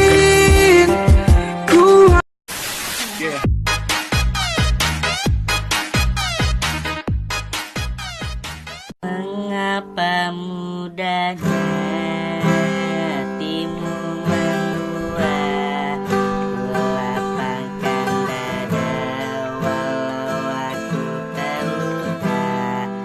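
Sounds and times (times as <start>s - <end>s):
person singing: 0.0s - 2.2s, 9.0s - 23.0s
strummed acoustic guitar: 10.0s - 23.0s.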